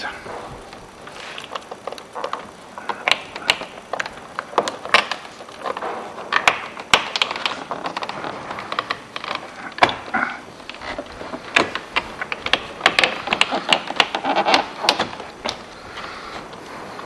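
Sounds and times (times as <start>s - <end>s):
plastic and metal parts knocking: 1.4s - 16.6s.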